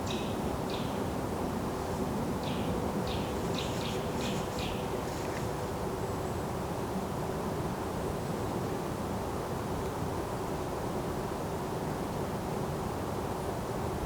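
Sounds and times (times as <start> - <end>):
faint steady hum: 0.0 - 14.0
low rush of forest background: 0.0 - 14.0.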